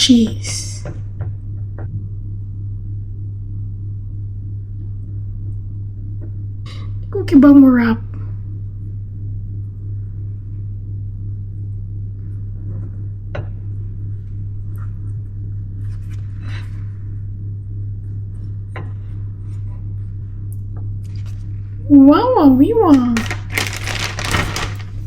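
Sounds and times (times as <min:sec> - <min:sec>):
steady low hum: 0:00.0 - 0:25.0
faint rustling: 0:23.1 - 0:25.0.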